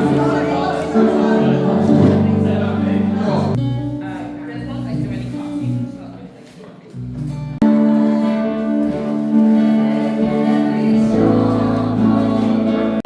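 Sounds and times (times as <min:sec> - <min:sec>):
person singing: 0:07.6 - 0:13.0.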